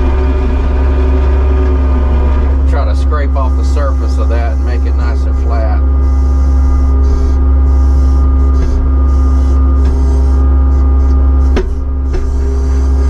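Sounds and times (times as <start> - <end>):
diesel engine droning: 0.0 - 13.0.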